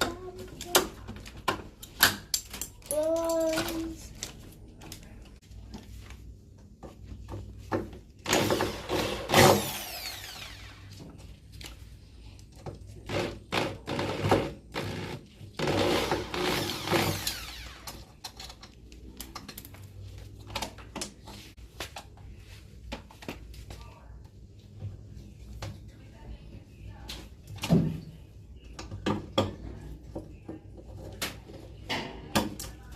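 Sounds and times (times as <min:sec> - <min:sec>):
clicks and knocks of parts: 0:00.0 - 0:05.4, 0:17.2 - 0:22.1
power drill whining: 0:08.3 - 0:10.9, 0:13.1 - 0:18.0.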